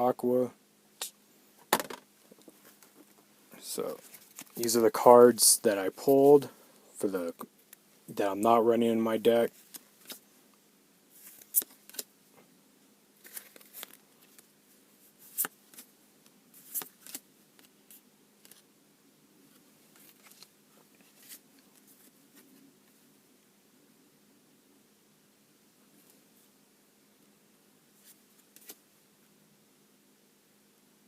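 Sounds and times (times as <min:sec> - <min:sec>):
trading cards clicking and rustling: 0:01.6 - 0:03.2, 0:11.2 - 0:12.1, 0:13.2 - 0:14.5, 0:16.6 - 0:18.6, 0:28.0 - 0:28.8
cards tapping down: 0:01.7 - 0:02.6.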